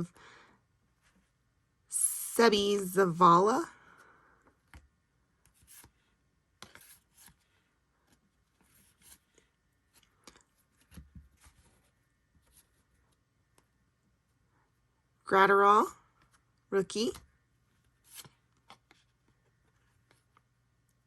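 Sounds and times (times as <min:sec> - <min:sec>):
trading cards rustling and sliding: 0:04.7 - 0:13.2, 0:17.8 - 0:20.5.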